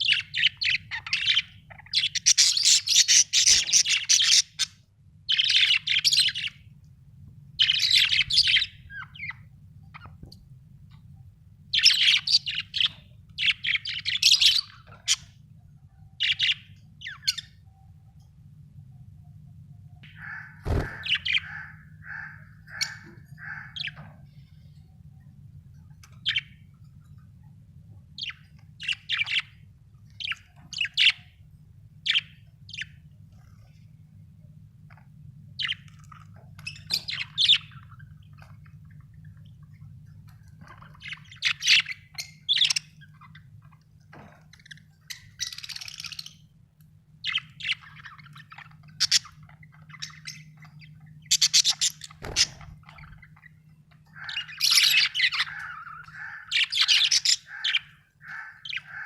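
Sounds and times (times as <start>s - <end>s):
budgerigars chirping: 0.0s - 6.6s, 7.6s - 10.3s, 11.7s - 15.4s, 16.2s - 17.6s, 20.0s - 24.1s, 26.0s - 26.7s, 28.2s - 31.4s, 32.0s - 33.0s, 35.6s - 39.8s, 40.6s - 46.5s, 47.2s - 59.0s
faint low hum: 0.0s - 59.0s.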